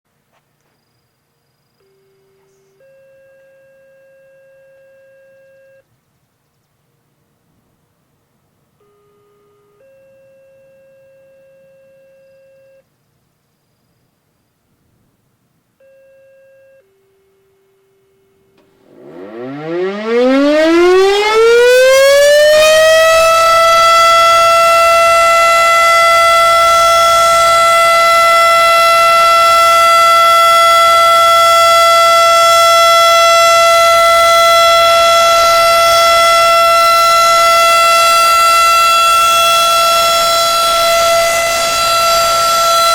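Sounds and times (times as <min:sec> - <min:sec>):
warning siren winding up: 0:18.6 - 0:42.9.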